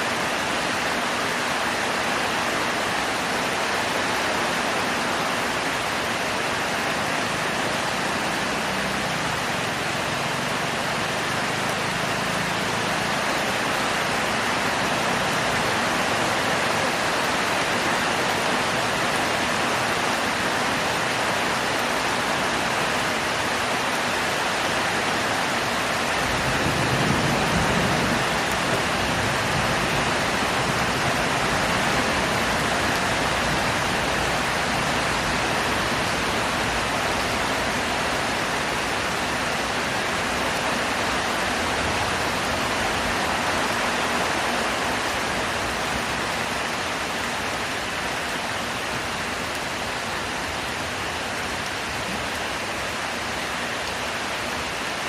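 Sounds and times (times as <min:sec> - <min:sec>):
heavy rain pouring: 0:00.0 - 0:55.0.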